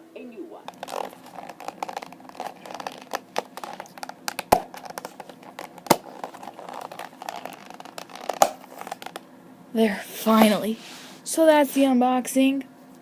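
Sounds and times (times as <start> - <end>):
plastic case creaking and clicking: 0.7 - 9.2.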